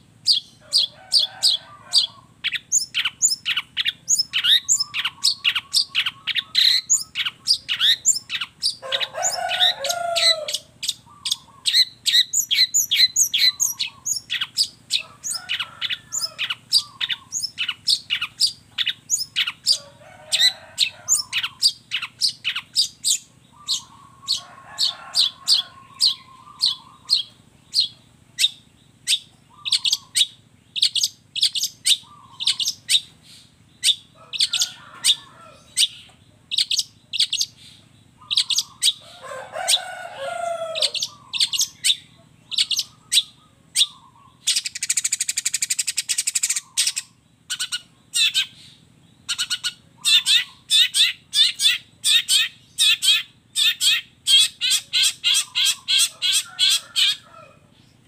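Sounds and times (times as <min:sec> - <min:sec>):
bird singing high chips: 0:00.2 - 0:19.8, 0:20.4 - 0:35.2, 0:40.2 - 0:57.2.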